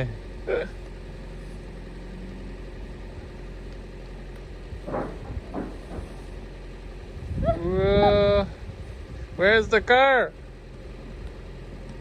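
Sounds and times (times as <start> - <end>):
car engine idling: 0.0 - 12.0
person exclaiming: 7.4 - 8.6.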